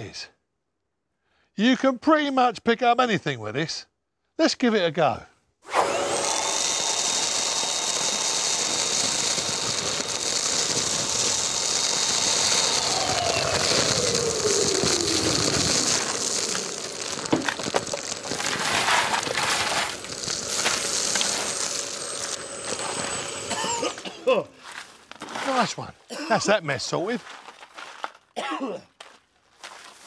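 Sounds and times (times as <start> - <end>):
wet and dry vacuum running: 5.7 - 24.5
debris rattling through hose: 5.8 - 24.2.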